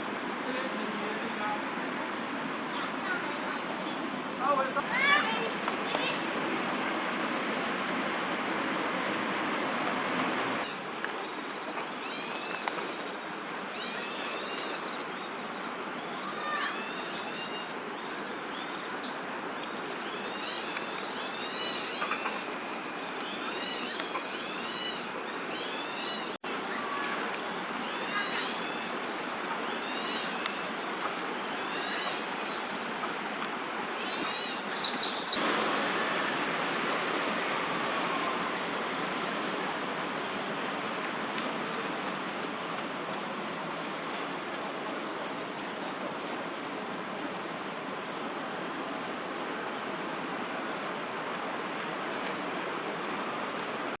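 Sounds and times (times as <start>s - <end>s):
city background hum: 0.0s - 54.0s.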